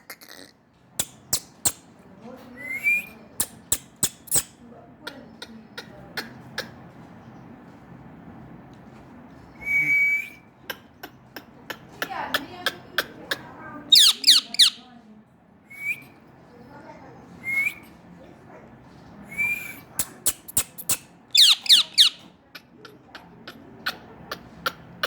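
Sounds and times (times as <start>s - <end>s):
parakeet whistling: 13.9s - 14.8s, 20.9s - 22.2s.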